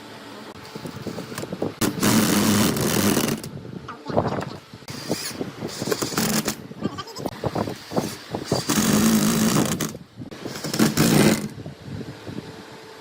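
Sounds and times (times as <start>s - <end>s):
power tool cutting wood: 4.9s - 6.6s, 7.9s - 11.5s.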